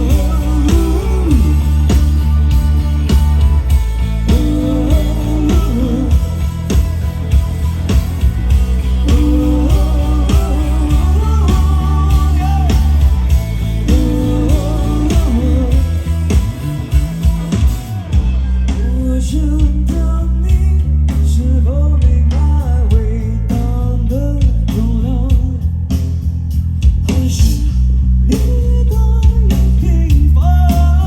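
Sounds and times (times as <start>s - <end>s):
person singing: 0.0s - 2.4s, 3.9s - 7.0s, 8.8s - 16.4s
heavy bass: 0.0s - 31.0s
live band playing: 0.0s - 31.0s
steady drum beat: 0.0s - 31.0s.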